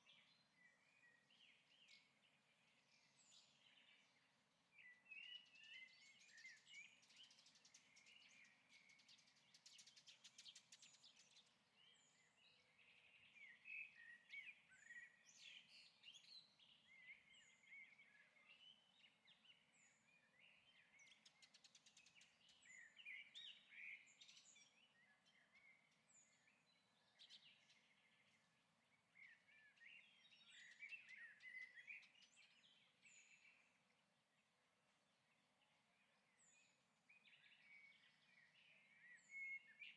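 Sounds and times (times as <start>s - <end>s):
birds chirping and trilling: 0.0s - 34.5s, 35.1s - 39.9s.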